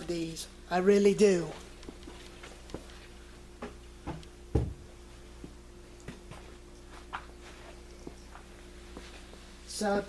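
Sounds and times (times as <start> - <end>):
faint steady hum: 0.0 - 10.0
deep thump: 4.1 - 4.9.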